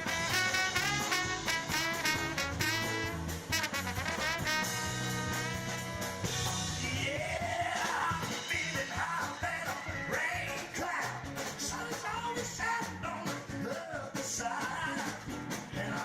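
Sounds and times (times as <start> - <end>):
lead melody bending in pitch: 0.0 - 5.9
live band playing: 0.0 - 16.0.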